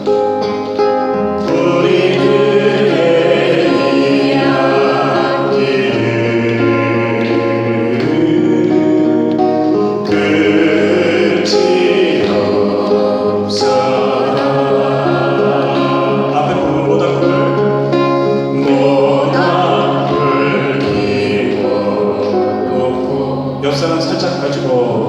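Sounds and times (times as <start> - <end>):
group singing slow song: 0.0 - 25.0
musical accompaniment: 0.0 - 25.0.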